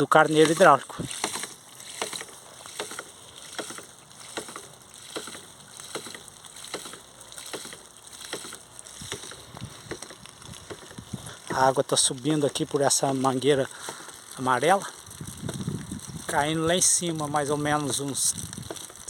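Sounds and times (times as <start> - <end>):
pump valve knocking: 0.3 - 11.6.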